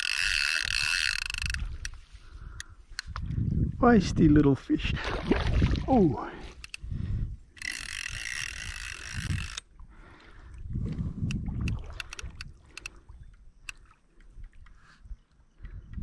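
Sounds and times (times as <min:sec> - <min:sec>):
fishing reel ratchet buzzing: 0:00.0 - 0:02.0, 0:07.5 - 0:09.7.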